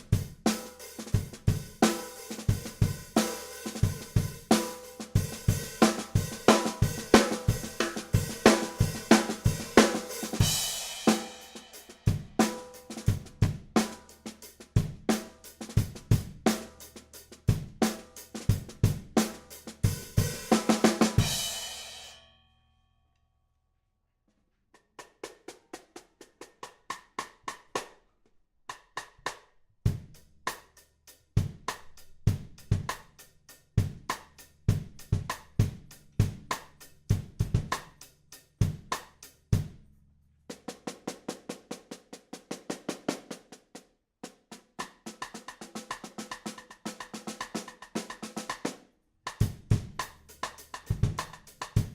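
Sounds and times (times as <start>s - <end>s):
snare drum backbeat: 0.0s - 16.8s, 49.3s - 51.9s
cymbal ringing: 21.3s - 22.6s
kick drum: 49.4s - 50.0s, 50.9s - 51.9s.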